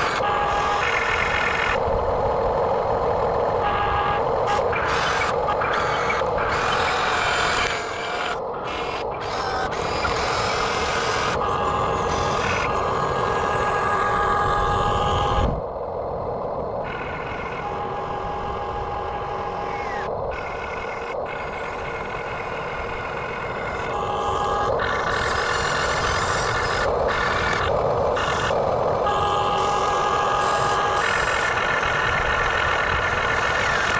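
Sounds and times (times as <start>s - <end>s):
toy excavator whining: 0.0s - 1.8s, 3.6s - 15.5s, 16.8s - 33.9s.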